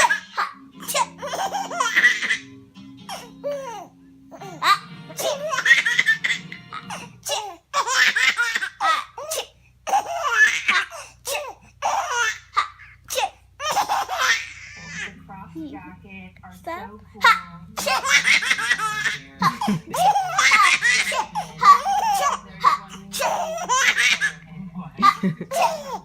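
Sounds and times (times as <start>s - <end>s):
baby laughing: 0.0s - 15.2s, 17.2s - 24.4s, 25.0s - 26.0s
child sneezing: 13.1s - 13.9s.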